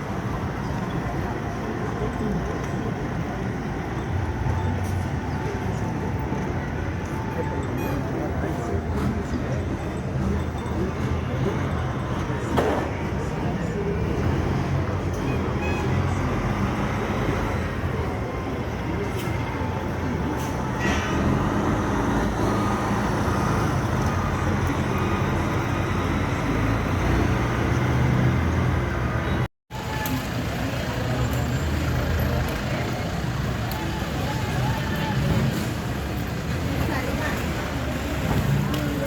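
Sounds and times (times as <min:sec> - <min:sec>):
road traffic: 0:00.0 - 0:39.0.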